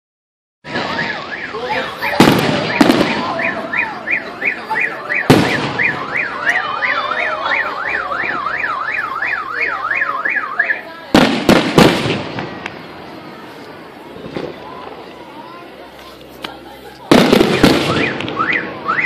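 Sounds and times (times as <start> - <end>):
car alarm siren wailing: 0.7 - 10.9, 17.8 - 19.0
fireworks banging: 0.7 - 19.0.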